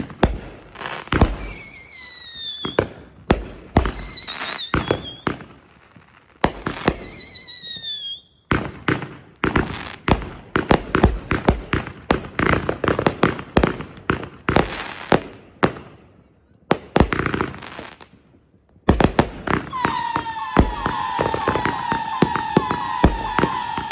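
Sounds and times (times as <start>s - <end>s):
firework bangs: 0.0s - 15.9s, 18.8s - 23.9s
falling firework whistle: 1.2s - 2.9s, 3.8s - 5.4s, 6.7s - 8.3s, 19.6s - 23.9s
firework crackling: 18.9s - 23.9s.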